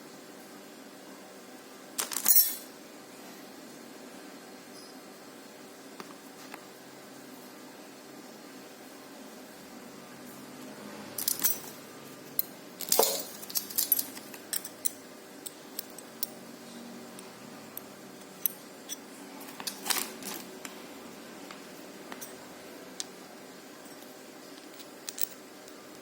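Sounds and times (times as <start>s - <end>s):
small steel parts clinking: 2.0s - 2.7s, 11.2s - 11.8s, 12.4s - 16.4s, 19.6s - 20.5s, 22.1s - 22.4s, 23.8s - 26.0s.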